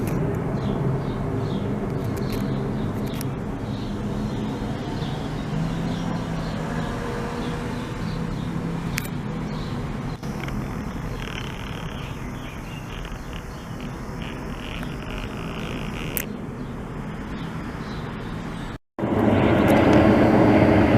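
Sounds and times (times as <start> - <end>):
jet engines rumbling: 0.0 - 20.9
small high chirps: 10.2 - 16.4.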